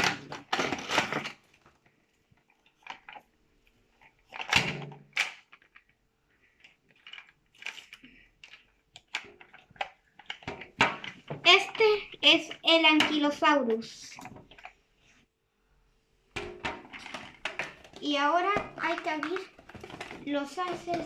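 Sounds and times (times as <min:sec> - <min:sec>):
packaging rustles and clicks: 0:04.0 - 0:11.3, 0:16.7 - 0:21.0.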